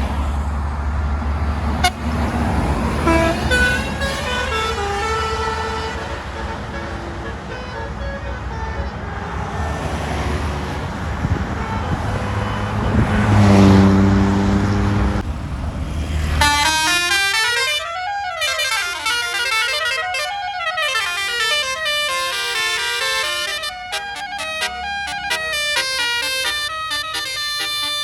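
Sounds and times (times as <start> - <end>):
bus engine: 0.0 - 28.0
traffic noise: 0.0 - 28.0
deep air horn blast: 1.7 - 15.2, 16.3 - 28.0
multi-trumpet horn melody: 1.8 - 2.2, 2.8 - 9.4, 16.4 - 28.0
short horn tones: 3.0 - 7.9.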